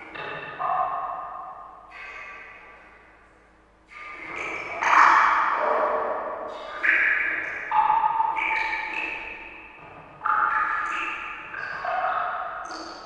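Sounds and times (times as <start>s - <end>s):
water drops plinking into water: 6.8s - 9.6s.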